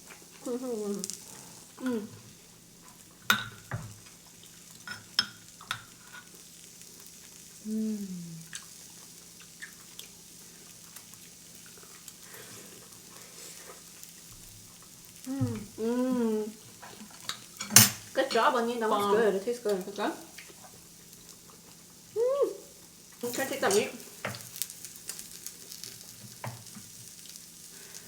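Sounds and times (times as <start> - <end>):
meat sizzling on a pan: 0.0 - 28.0
person humming: 0.4 - 1.2, 1.8 - 2.2, 7.6 - 8.6, 15.2 - 16.6, 22.2 - 22.7
utensils clicking against dishes: 17.2 - 19.2, 23.2 - 24.4.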